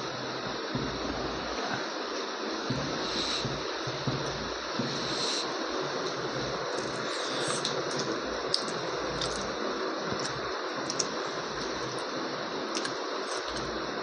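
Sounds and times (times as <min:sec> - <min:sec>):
wet eating clicks and smacks: 0:06.7 - 0:12.1, 0:12.7 - 0:13.7.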